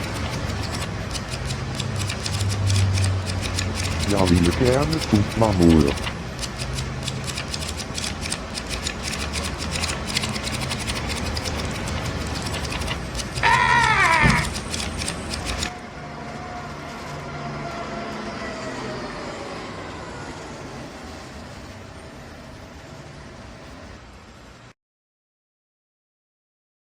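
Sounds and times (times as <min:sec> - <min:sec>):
pages riffling: 0:00.0 - 0:15.7.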